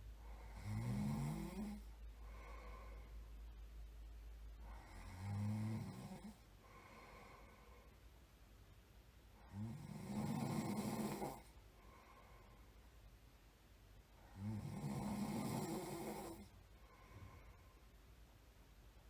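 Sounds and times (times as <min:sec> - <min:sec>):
quiet breathing: 0:00.0 - 0:18.4
person snoring: 0:00.4 - 0:02.9, 0:04.6 - 0:06.4, 0:09.4 - 0:11.5, 0:14.3 - 0:16.5.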